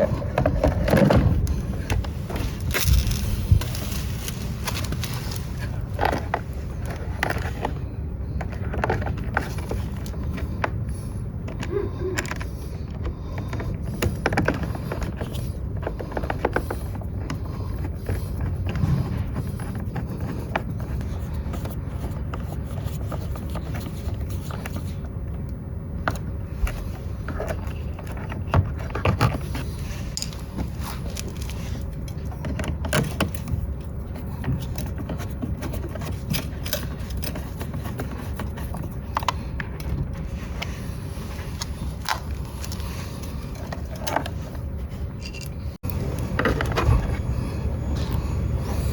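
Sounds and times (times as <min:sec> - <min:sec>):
steady low rumble: 0:00.0 - 0:48.9
clicks knocks and scrapes of tools: 0:26.0 - 0:47.2.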